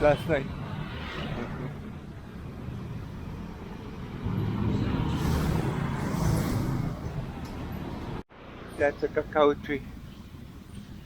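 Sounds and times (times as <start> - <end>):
rumble of passing vehicles: 0.0 - 11.0.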